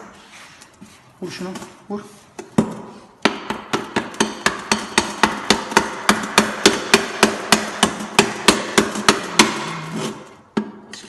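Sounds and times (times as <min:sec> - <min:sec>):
hammer striking metal: 0:02.6 - 0:09.8.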